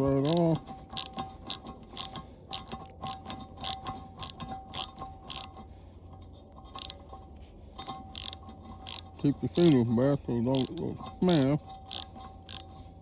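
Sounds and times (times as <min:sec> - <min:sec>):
socket wrench ratchet clicking: 0:00.2 - 0:05.6, 0:06.7 - 0:07.0, 0:07.8 - 0:09.9, 0:10.5 - 0:12.8.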